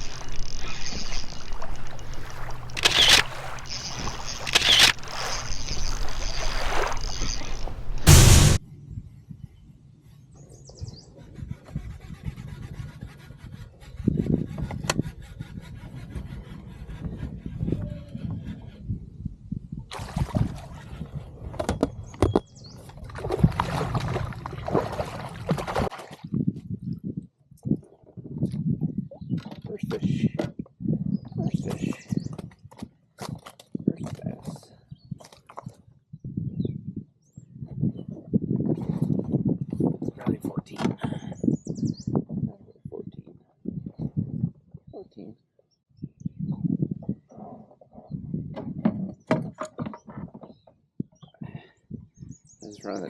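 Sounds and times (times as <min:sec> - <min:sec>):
water splashing: 0:00.0 - 0:08.6
low hum: 0:00.0 - 0:09.0
noisy hiss: 0:02.3 - 0:08.6.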